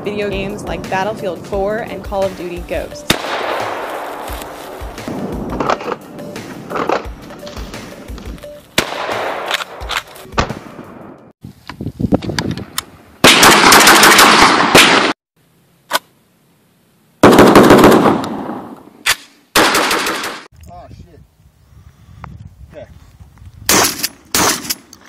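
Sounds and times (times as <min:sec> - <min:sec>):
shotgun shots: 0:03.1 - 0:04.3, 0:08.8 - 0:11.1, 0:13.2 - 0:15.2, 0:17.2 - 0:20.5, 0:23.7 - 0:24.8.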